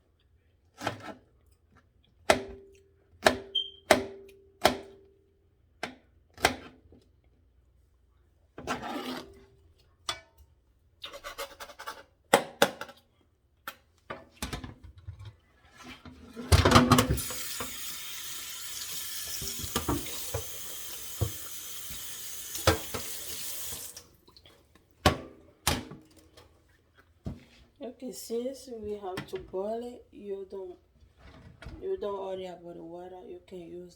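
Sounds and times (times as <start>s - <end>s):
water running into a pot: 16.5s - 24.6s.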